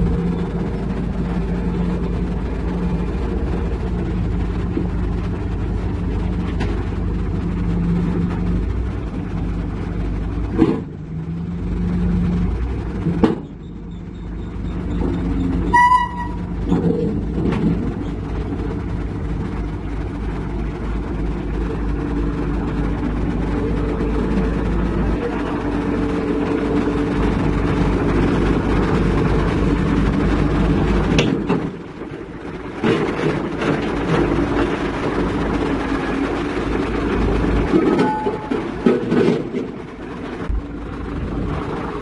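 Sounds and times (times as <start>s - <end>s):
diesel engine running: 0.0s - 42.0s
short horn toot: 15.7s - 16.5s
metallic clanks: 37.6s - 39.8s.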